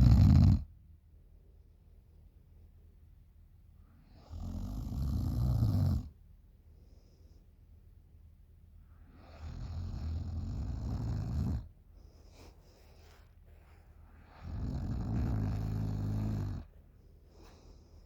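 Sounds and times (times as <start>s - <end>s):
girl snoring: 0.0s - 0.7s, 14.4s - 16.7s.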